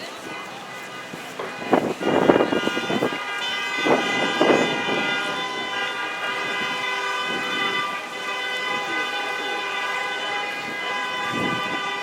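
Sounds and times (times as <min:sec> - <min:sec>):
tower bells ringing: 0:03.8 - 0:12.0.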